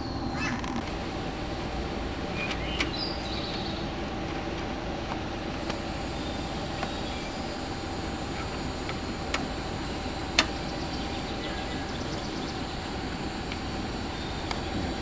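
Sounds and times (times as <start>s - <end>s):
high bird chirps: 2.4s - 3.8s.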